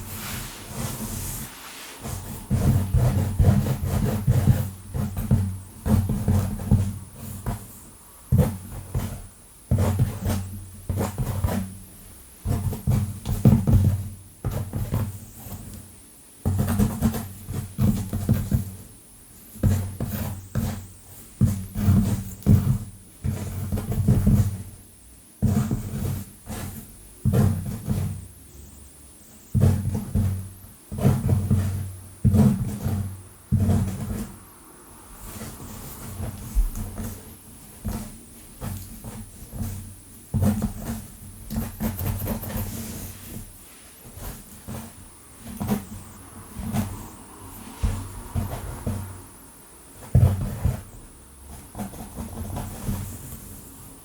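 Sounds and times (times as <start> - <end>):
nails scratching through hair: 0.0 - 5.1, 40.4 - 49.2.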